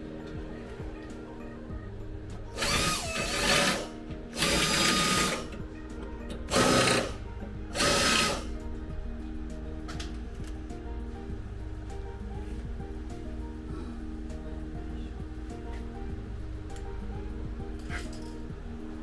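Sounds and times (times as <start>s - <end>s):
background music: 0.0s - 19.0s
power tool bursts: 2.6s - 5.6s, 6.5s - 8.6s.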